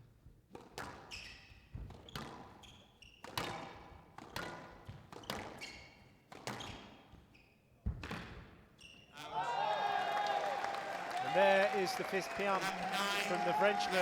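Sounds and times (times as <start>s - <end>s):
squash ball hitting rackets and walls: 0.5s - 7.3s, 7.9s - 8.6s
shoes squeaking on court floor: 1.0s - 8.2s, 8.8s - 9.2s.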